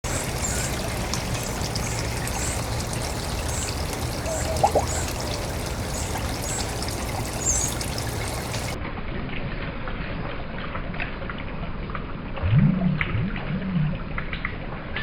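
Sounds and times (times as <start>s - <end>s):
small birds chirping: 0.0s - 8.8s
trickling water rush: 0.0s - 8.8s.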